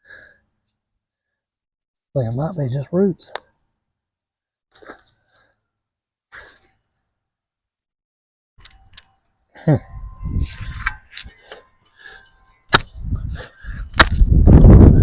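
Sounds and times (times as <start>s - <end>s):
tool scraping in soil: 10.2s - 14.3s.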